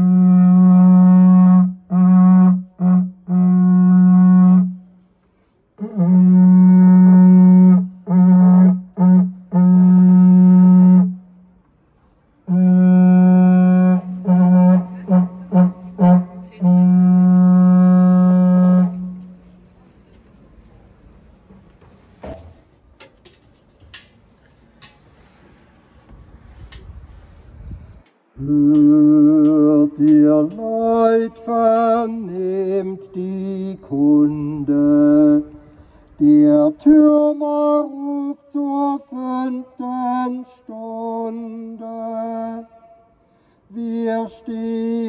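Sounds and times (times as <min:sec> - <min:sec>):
signal horn low note: 0:12.4 - 0:19.6.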